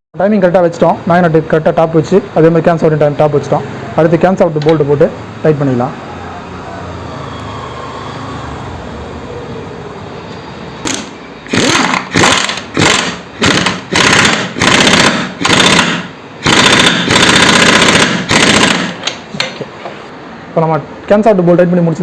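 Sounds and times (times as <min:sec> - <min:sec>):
impact wrench bursts: 0:10.8 - 0:19.6.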